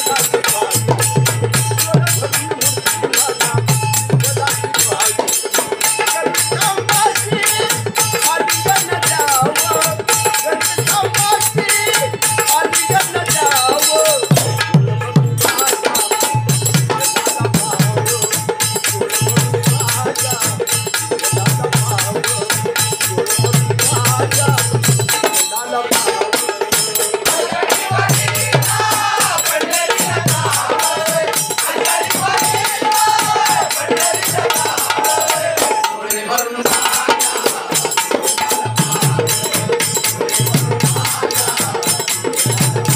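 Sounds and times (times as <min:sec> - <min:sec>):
jingling percussion beat: 0:00.0 - 0:42.9
drum struck: 0:14.3 - 0:15.7.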